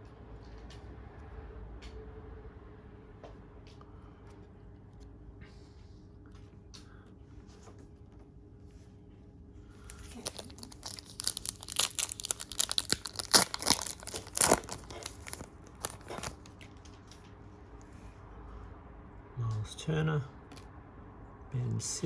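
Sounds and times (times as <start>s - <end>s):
wrapper tearing and crinkling: 9.9s - 16.5s.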